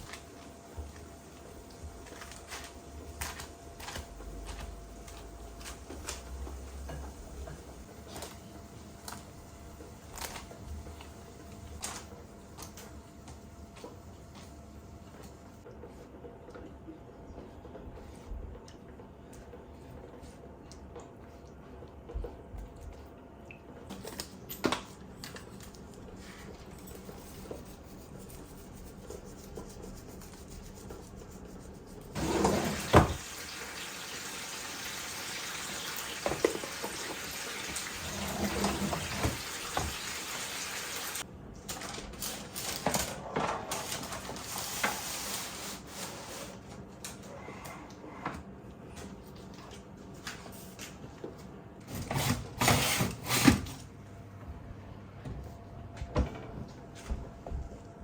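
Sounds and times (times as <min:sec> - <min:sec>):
water running from tap: 0:32.2 - 0:41.2.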